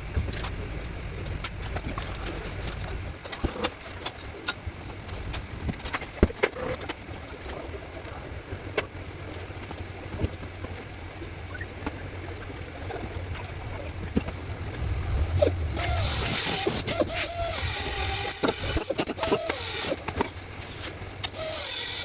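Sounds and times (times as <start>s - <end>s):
steady low hum: 0.0s - 21.4s
loud hiss: 15.3s - 20.0s.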